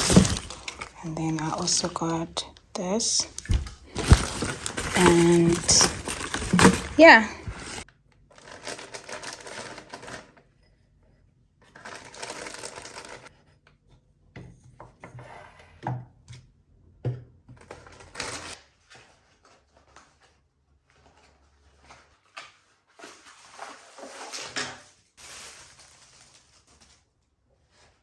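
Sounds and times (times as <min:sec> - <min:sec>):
shopping bags rustling: 0:00.0 - 0:02.5, 0:03.1 - 0:07.8, 0:08.4 - 0:10.3, 0:11.8 - 0:13.3, 0:25.2 - 0:27.0
items clicking and knocking: 0:00.0 - 0:02.6, 0:03.2 - 0:10.4, 0:11.7 - 0:13.3.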